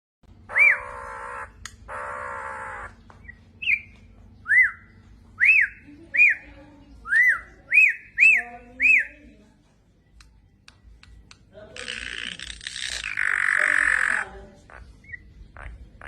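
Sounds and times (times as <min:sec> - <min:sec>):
bird harsh call: 0:00.5 - 0:03.0, 0:11.8 - 0:16.0.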